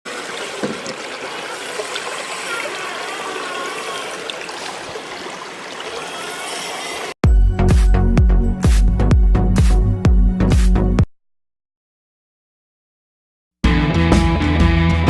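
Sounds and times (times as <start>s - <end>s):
running water rushing: 0.1s - 7.2s.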